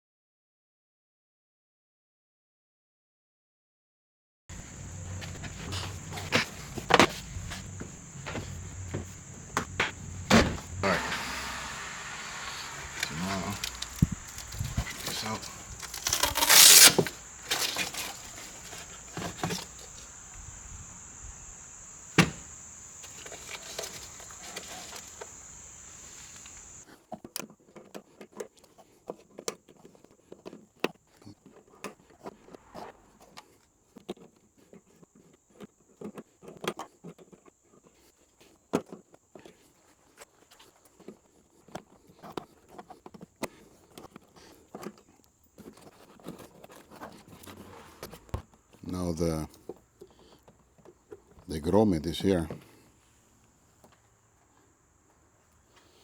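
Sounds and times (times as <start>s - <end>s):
faint high whine: 4.5s - 26.8s.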